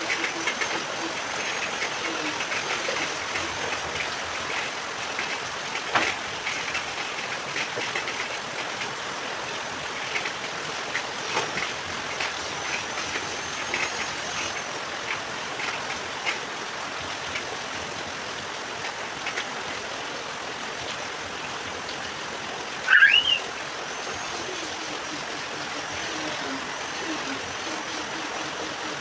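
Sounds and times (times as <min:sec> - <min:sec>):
heavy rain pouring: 0:00.0 - 0:29.0
short rising squeak: 0:22.9 - 0:24.7.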